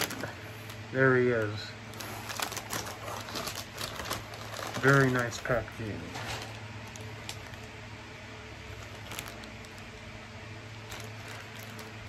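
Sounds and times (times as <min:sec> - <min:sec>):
plastic packaging crinkling: 0:00.0 - 0:07.8, 0:08.6 - 0:10.1, 0:10.7 - 0:12.0
steady low hum: 0:00.0 - 0:12.0.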